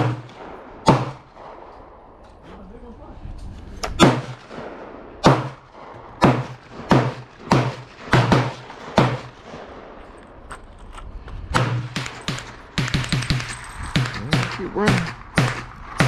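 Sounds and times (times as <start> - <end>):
gunshots with echo: 0.0 - 2.2, 4.0 - 10.0, 11.6 - 16.0.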